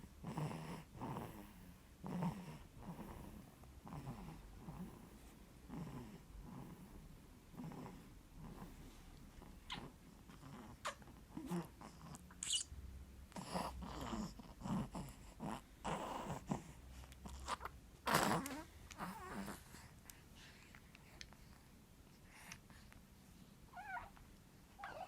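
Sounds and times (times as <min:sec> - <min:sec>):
snores snorts and grunts: 0:00.2 - 0:05.0, 0:05.7 - 0:06.9.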